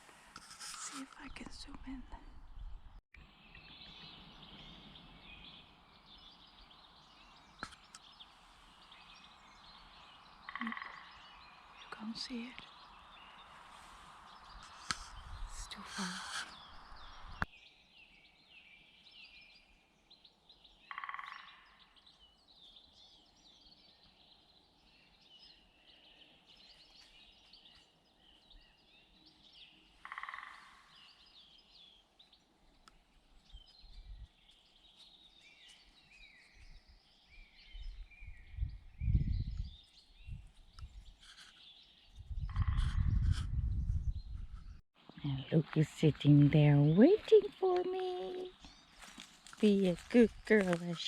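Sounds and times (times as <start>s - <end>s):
songbirds chirping and trilling: 0.0s - 51.0s
harsh bird calls: 42.3s - 43.4s.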